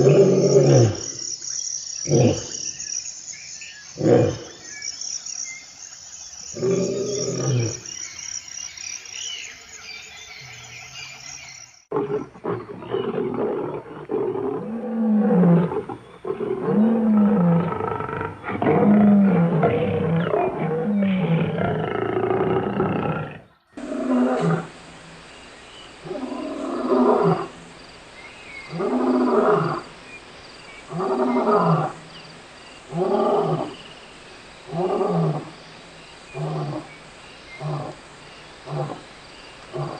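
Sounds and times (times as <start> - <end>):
lions roaring: 11.9 - 24.7.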